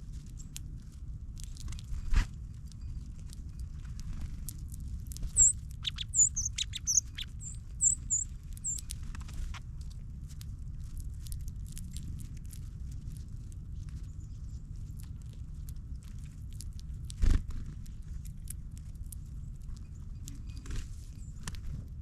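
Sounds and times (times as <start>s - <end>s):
birds cracking seeds: 0.0s - 21.7s
steady low rumble: 0.0s - 22.0s.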